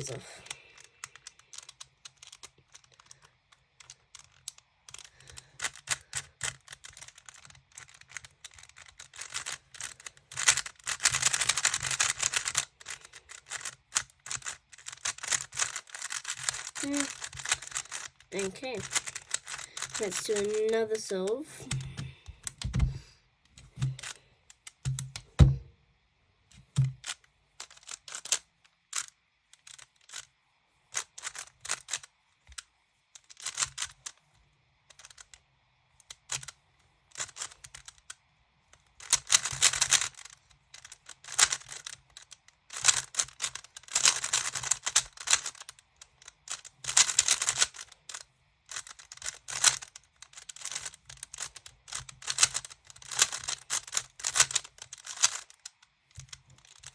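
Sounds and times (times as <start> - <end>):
puzzle cube layers clicking: 0.1 - 23.0, 23.6 - 25.6, 26.6 - 30.3, 31.0 - 34.2, 34.9 - 35.4, 36.0 - 38.2, 38.9 - 56.9.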